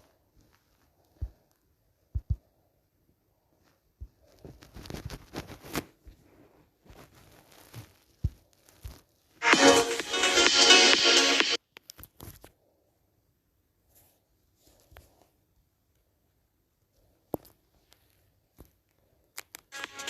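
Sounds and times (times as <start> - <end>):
rustling: 3.4 - 9.4.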